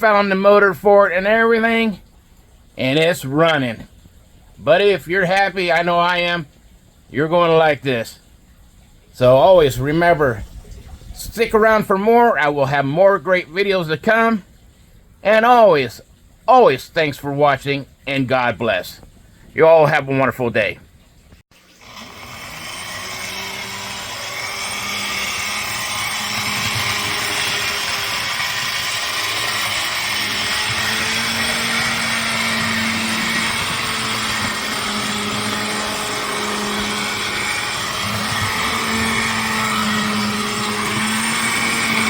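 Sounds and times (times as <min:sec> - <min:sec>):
model train motor whining: 0:21.6 - 0:42.0.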